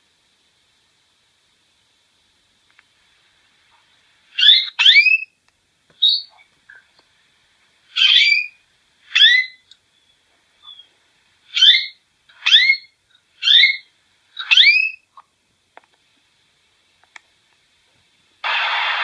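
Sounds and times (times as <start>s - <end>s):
bird calling: 4.4s - 5.4s, 6.0s - 6.9s, 7.9s - 15.2s.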